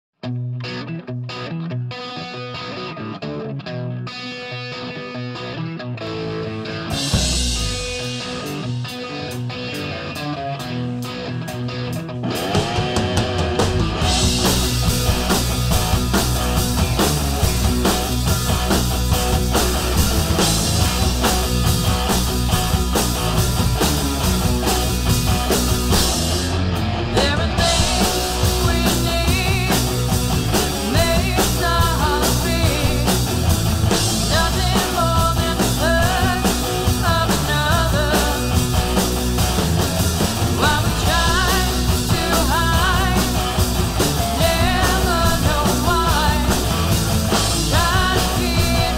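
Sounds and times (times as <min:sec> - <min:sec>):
bass guitar: 0:00.2 - 0:48.9
electric guitars: 0:00.2 - 0:48.9
drums with steady beat: 0:06.9 - 0:48.9
woman singing lead vocal: 0:27.1 - 0:30.1, 0:30.8 - 0:33.3, 0:34.2 - 0:38.6, 0:40.6 - 0:43.6, 0:44.2 - 0:46.8, 0:47.5 - 0:48.9.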